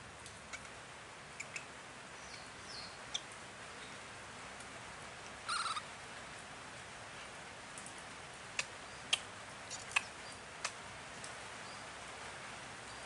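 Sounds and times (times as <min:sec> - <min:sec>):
faint steady hiss: 0:00.0 - 0:13.0
high quavering animal squeak: 0:05.5 - 0:05.9.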